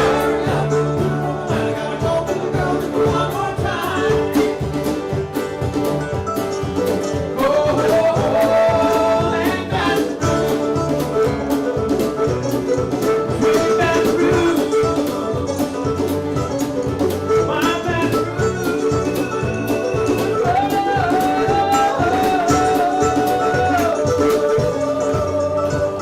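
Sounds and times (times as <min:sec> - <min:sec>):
person singing: 0:00.0 - 0:05.0, 0:07.2 - 0:10.7, 0:13.2 - 0:15.4, 0:17.3 - 0:26.0
bluegrass band music: 0:00.0 - 0:26.0
guitar: 0:00.0 - 0:26.0
plucked banjo: 0:00.0 - 0:26.0.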